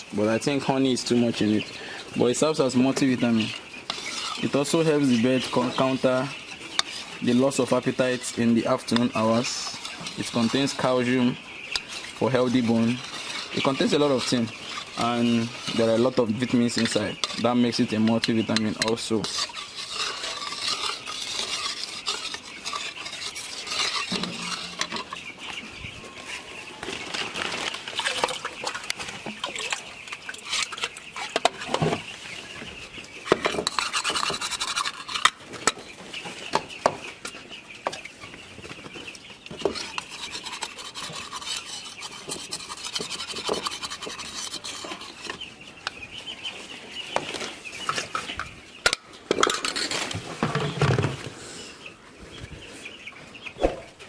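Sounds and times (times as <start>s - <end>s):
stirrer scraping a container: 2.2s - 25.6s, 26.3s - 32.1s, 33.3s - 35.8s, 39.5s - 45.5s.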